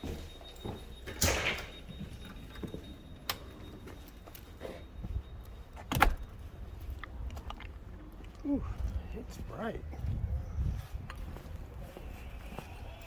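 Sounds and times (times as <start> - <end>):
door opening and shutting: 0.6 - 3.6, 5.8 - 6.4.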